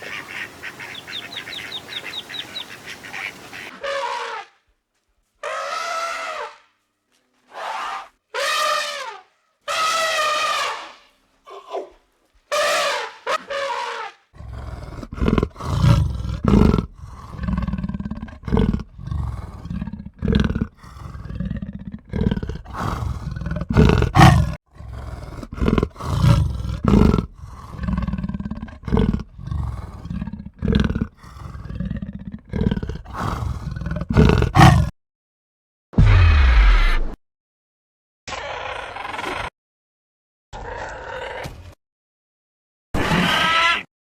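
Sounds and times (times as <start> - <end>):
deep rough animal calls: 14.4 - 34.9.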